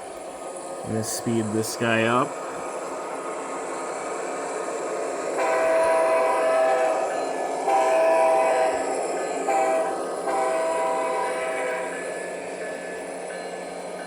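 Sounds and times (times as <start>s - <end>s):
model train engine sound: 0.0s - 14.0s
model train horn blasts: 5.4s - 8.9s, 9.5s - 12.0s.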